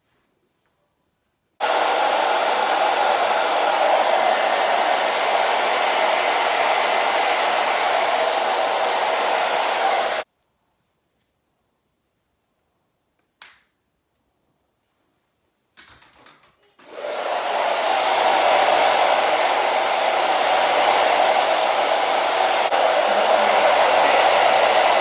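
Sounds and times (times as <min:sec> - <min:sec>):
hair dryer blowing: 0:01.6 - 0:10.3, 0:16.8 - 0:25.0.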